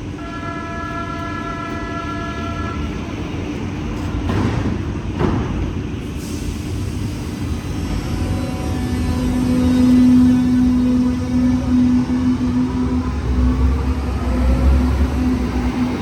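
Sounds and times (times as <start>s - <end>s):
electric train low rumble: 0.0s - 16.0s
steady tones: 7.4s - 16.0s.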